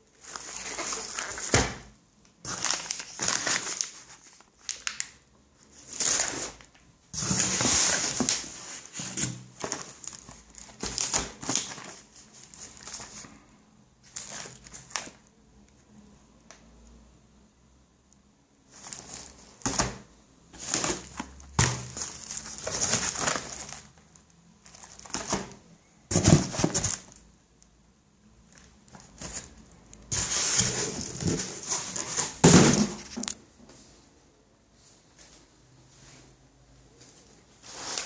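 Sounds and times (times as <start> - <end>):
packaging rustling and crinkling: 0.1 - 13.4, 14.0 - 15.3, 18.7 - 27.2, 28.5 - 33.4, 37.5 - 38.0.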